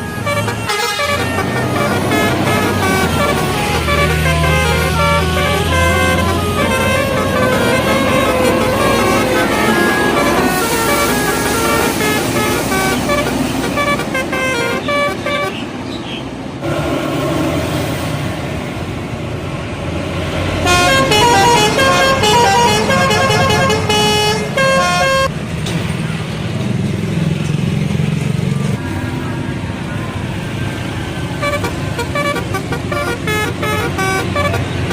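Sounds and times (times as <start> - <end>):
musical air horn melody: 0.0 - 15.6, 20.6 - 25.3, 31.4 - 34.9
vehicle and road noise: 0.0 - 34.9.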